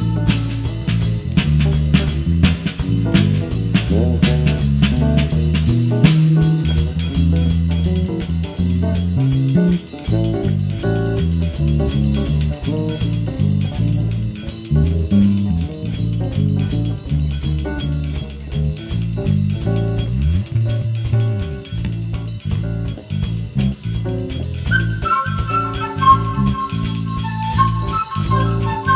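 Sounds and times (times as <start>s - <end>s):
bass guitar playing: 0.0s - 28.9s
drum kit cymbals ticking: 0.0s - 28.9s
guitar playing plucked lines: 0.0s - 28.9s.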